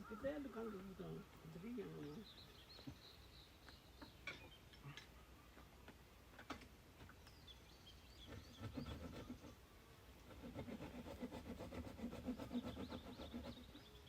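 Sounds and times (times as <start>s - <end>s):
small birds chirping: 0.0s - 6.0s, 7.0s - 10.1s, 12.1s - 14.0s
scraping wood: 10.2s - 13.8s.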